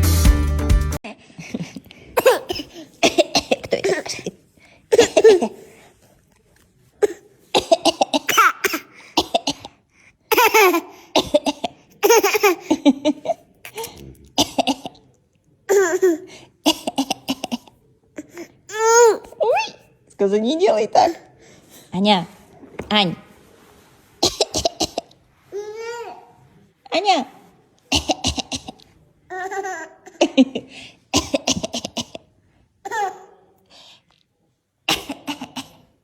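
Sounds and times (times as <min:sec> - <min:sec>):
person coughing: 0:02.2 - 0:05.6, 0:07.0 - 0:12.6.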